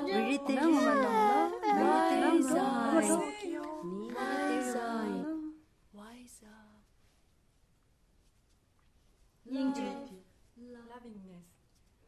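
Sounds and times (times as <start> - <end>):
high voices singing a cappella: 0.0 - 5.7, 9.5 - 10.3.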